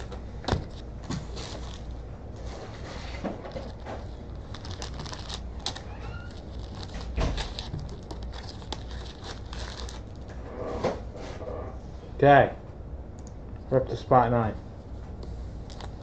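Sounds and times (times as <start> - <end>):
foil wrappers crinkling: 0.0 - 10.3, 15.6 - 16.0.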